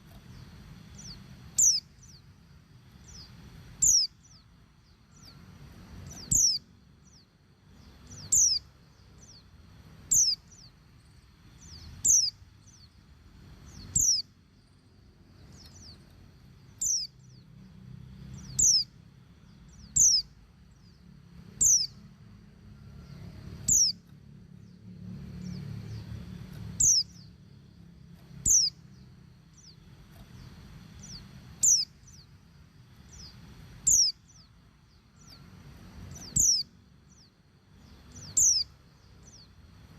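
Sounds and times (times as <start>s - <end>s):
faint low rumble: 0.0s - 39.9s
bird giving high downward call: 6.2s - 6.6s, 13.7s - 14.3s, 31.0s - 32.2s.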